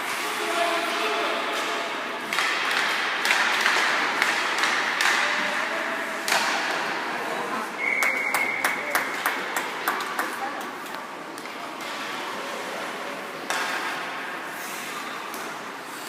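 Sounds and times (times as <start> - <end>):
voices echoing in a hall: 0.0 - 16.0
referee's whistle: 7.8 - 8.8.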